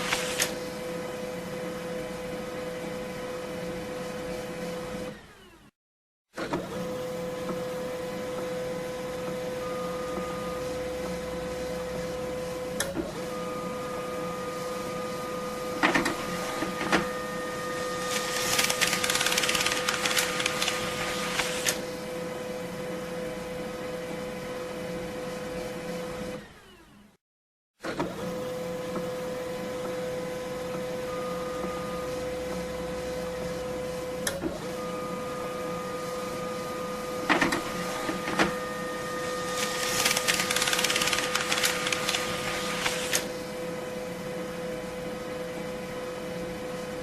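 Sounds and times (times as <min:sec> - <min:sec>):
printer humming: 0:00.0 - 0:05.6, 0:06.5 - 0:26.8, 0:28.0 - 0:47.0
printer rushing whirr: 0:00.0 - 0:05.7, 0:06.4 - 0:24.5, 0:27.8 - 0:47.0
printer clicks: 0:18.2 - 0:21.8, 0:39.6 - 0:43.3.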